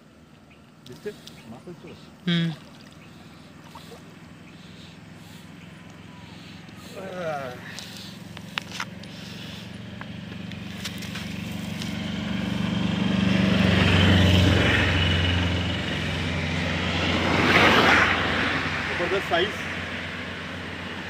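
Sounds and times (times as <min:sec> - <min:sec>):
engine running with low hum: 0:00.0 - 0:21.0.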